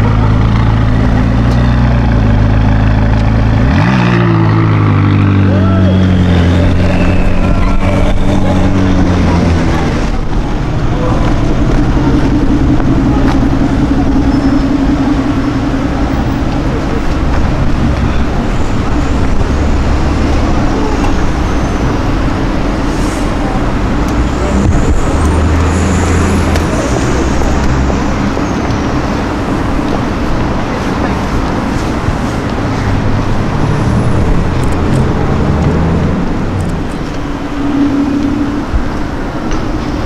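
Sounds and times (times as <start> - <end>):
car engines rumbling: 0.0 - 40.0
faint high whistle: 37.5 - 38.8.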